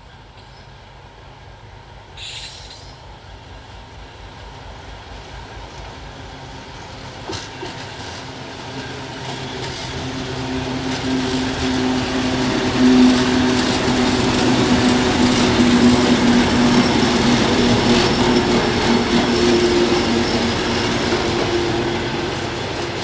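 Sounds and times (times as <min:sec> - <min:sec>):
diesel locomotive approaching: 0:00.0 - 0:23.0
short hiss: 0:02.2 - 0:03.0.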